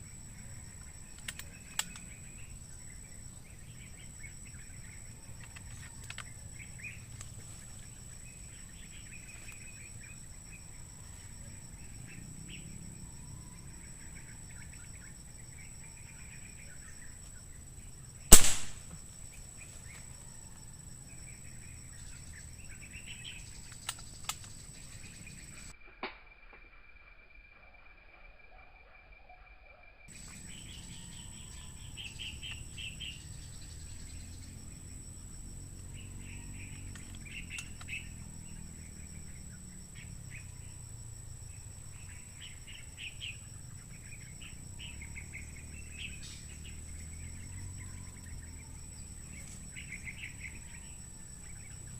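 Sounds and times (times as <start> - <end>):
small birds chirping: 0.0 - 25.7, 30.1 - 51.9
faint clicks: 1.2 - 2.2, 5.4 - 6.3, 23.6 - 24.6
air rifle shot: 18.3 - 18.9.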